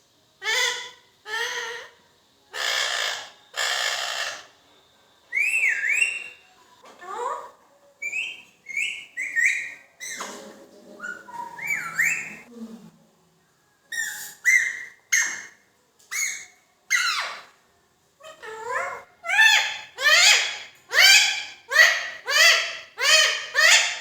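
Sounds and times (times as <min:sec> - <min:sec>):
parrot whistling and squawking: 0:00.4 - 0:04.6, 0:05.3 - 0:10.3, 0:11.0 - 0:12.5, 0:13.9 - 0:17.6, 0:18.2 - 0:24.0
parrot chattering: 0:02.6 - 0:04.6, 0:11.0 - 0:12.5.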